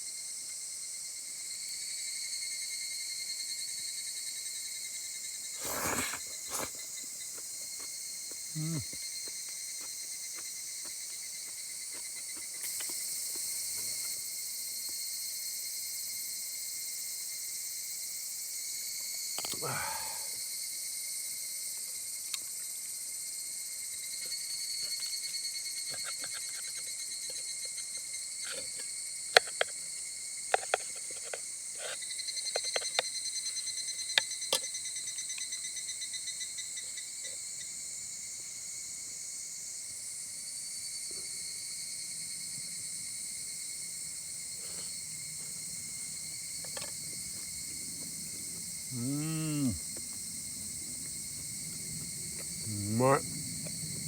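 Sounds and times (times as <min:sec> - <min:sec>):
insects chirping: 0:00.0 - 0:54.0
campfire crackles: 0:43.6 - 0:54.0.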